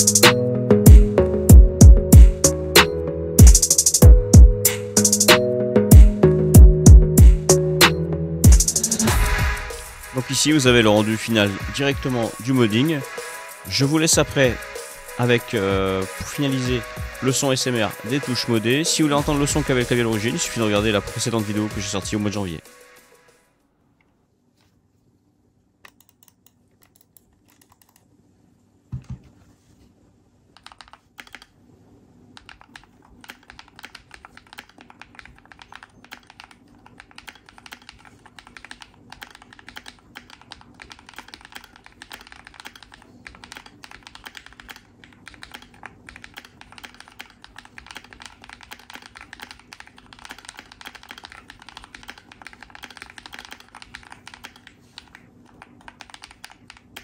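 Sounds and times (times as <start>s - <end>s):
typing on mechanical keyboard: 25.9s - 28.0s, 30.6s - 31.5s, 32.4s - 57.0s.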